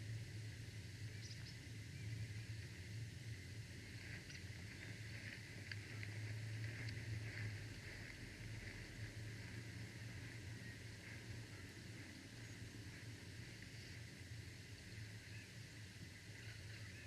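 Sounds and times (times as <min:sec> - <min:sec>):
wind rumbling on microphone: 0:00.0 - 0:17.0
small birds chirping: 0:01.1 - 0:02.7, 0:09.4 - 0:14.1.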